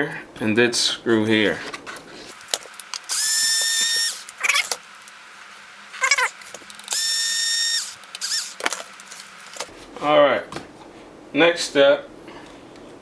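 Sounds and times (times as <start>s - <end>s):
power screwdriver whining: 2.9s - 4.8s, 6.2s - 9.7s.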